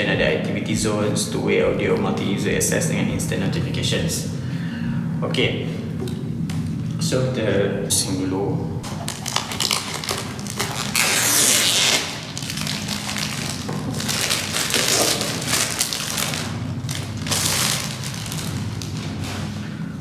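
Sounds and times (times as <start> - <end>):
steady low hum: 0.0 - 20.0
cardboard box rustling and scraping: 8.9 - 19.8.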